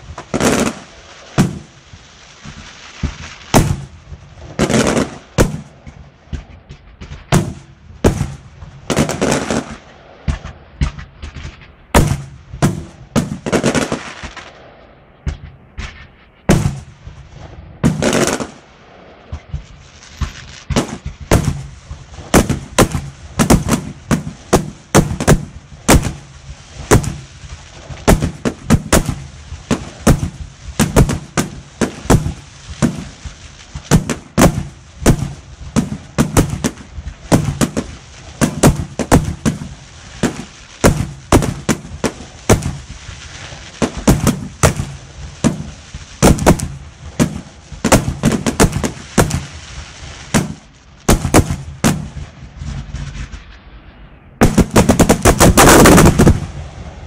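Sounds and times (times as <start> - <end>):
fireworks crackle: 0.0 - 57.0
firework shell bursts: 19.3 - 53.4, 54.4 - 56.6.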